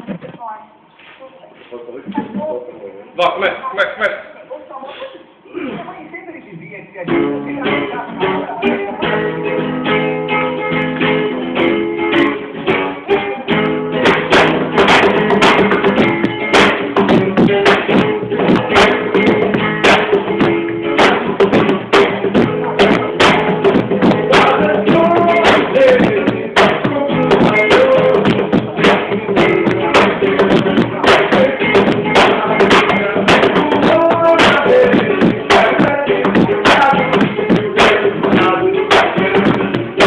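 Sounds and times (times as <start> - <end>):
acoustic guitar strummed: 7.1 - 40.0
sharp percussive hits: 14.0 - 40.0.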